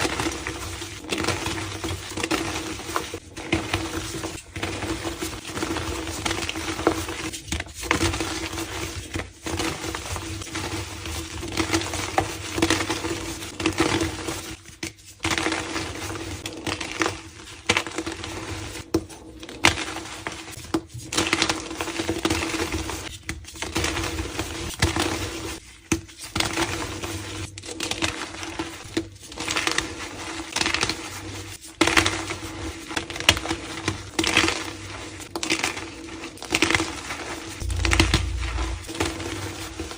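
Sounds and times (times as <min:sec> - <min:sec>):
steady low hum: 0:37.6 - 0:39.4.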